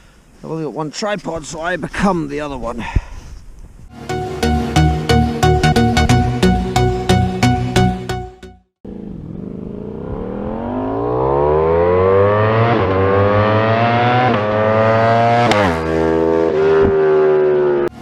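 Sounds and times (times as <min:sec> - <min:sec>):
motorcycle accelerating: 0:08.8 - 0:18.0.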